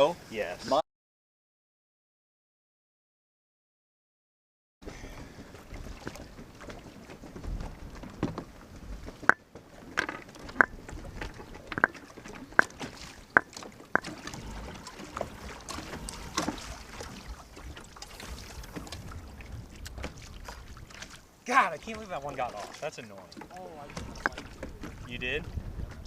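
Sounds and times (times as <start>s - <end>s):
water slapping against kayak hull: 4.8s - 26.0s
wind rumble on microphone: 4.9s - 12.7s, 14.3s - 21.3s, 23.7s - 26.0s.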